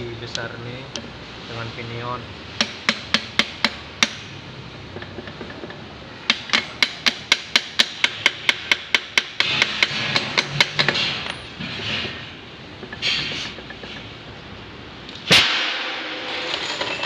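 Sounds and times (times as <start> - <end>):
hammer tapping on metal: 2.6 - 4.3, 6.3 - 10.9.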